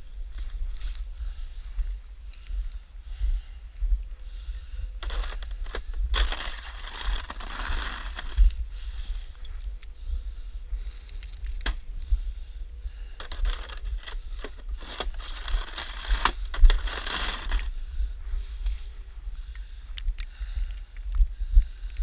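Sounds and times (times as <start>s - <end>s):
snow shovel scraping snow: 5.0s - 8.4s, 13.2s - 17.7s.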